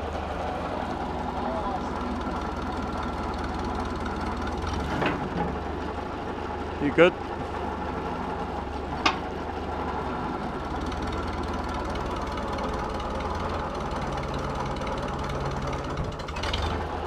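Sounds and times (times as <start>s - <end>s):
tractor engine rumble: 0.0s - 17.0s.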